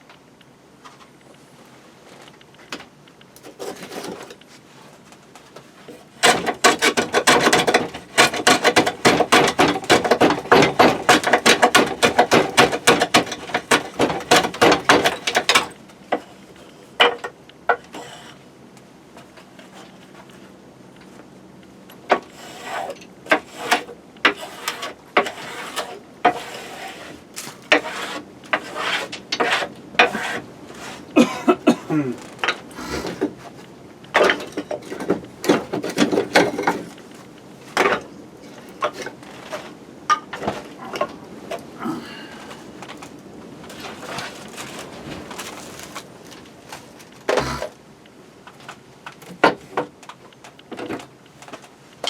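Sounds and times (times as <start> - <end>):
wood being scraped by hand: 3.4 - 4.4, 5.9 - 16.6, 17.8 - 18.4, 22.1 - 31.3.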